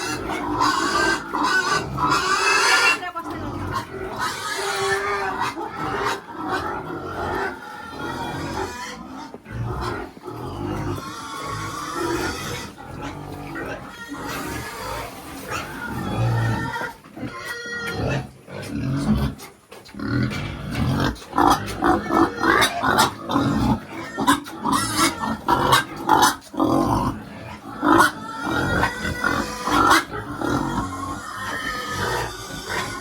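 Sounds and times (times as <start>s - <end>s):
pigs calling: 0.0s - 33.0s.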